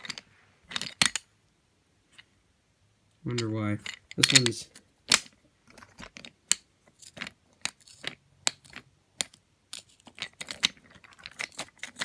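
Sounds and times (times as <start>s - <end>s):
magnetic couplings clacking: 3.3s - 12.0s
toy train pieces clicking: 3.4s - 12.0s.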